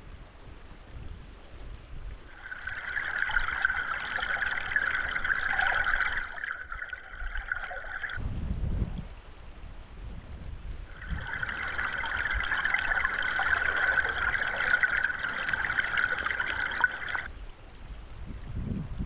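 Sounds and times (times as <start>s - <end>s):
water pouring: 2.3s - 8.2s, 10.9s - 17.3s.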